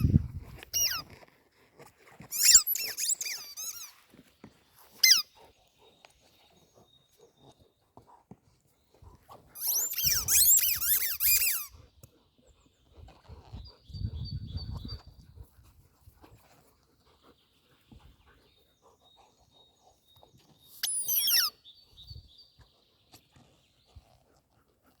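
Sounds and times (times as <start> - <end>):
squeaky pet toy squeaks: 0.7 - 1.1, 2.3 - 3.9, 5.0 - 5.2, 9.6 - 11.7, 20.8 - 21.5.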